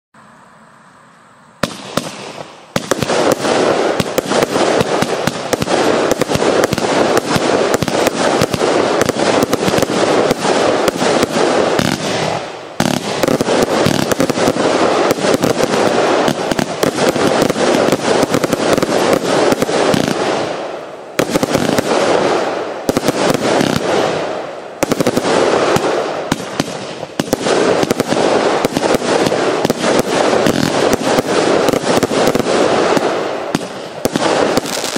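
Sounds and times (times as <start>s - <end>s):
firework bangs and crackles: 1.6s - 34.9s.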